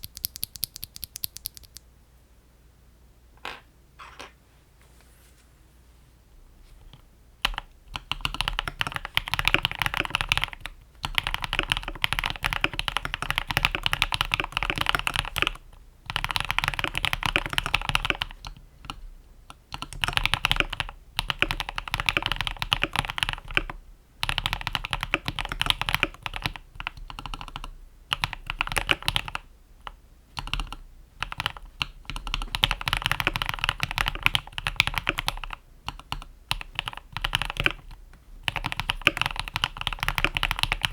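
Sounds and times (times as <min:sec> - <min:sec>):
typing on mechanical keyboard: 0:00.0 - 0:01.8, 0:07.4 - 0:19.0, 0:19.7 - 0:40.9.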